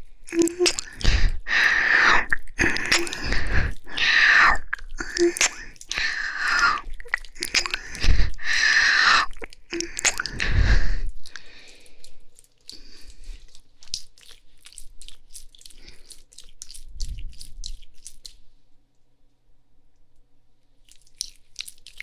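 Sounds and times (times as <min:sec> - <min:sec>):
wet licking and kissing smacks: 0:00.3 - 0:10.6.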